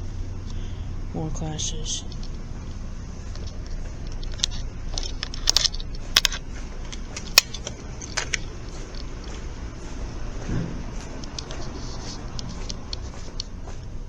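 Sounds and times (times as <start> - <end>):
short sharp clicks and clinks: 5.5 - 6.4.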